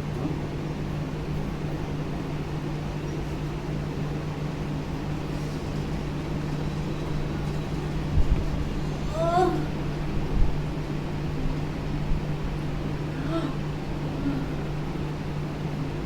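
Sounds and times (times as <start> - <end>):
steady machine hum: 0.0 - 16.0
even whirring noise: 3.4 - 16.0.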